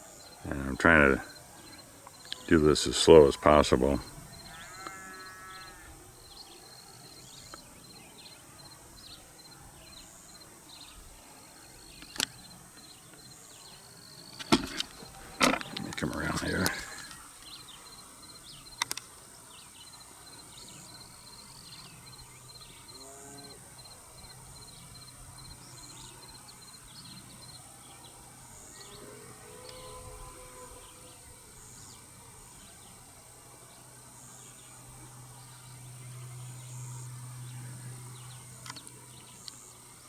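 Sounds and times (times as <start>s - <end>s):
birds chirping: 0.0s - 30.1s, 34.2s - 39.8s
lower bird calls: 0.2s - 11.0s
steady low hum: 30.2s - 40.0s.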